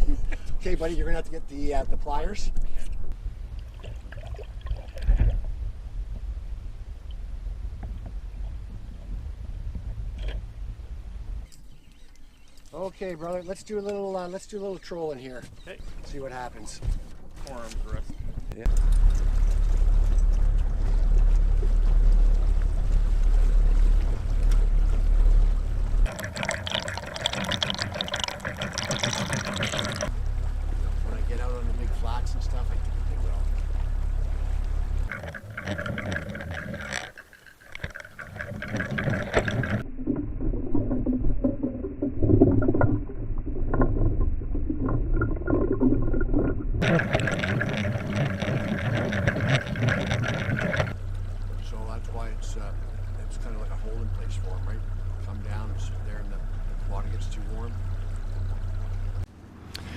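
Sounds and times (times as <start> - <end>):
low rumble: 0.0 - 11.5, 16.2 - 26.6, 27.2 - 37.1, 38.4 - 59.3
water splashing and trickling: 3.4 - 5.7, 18.6 - 59.3.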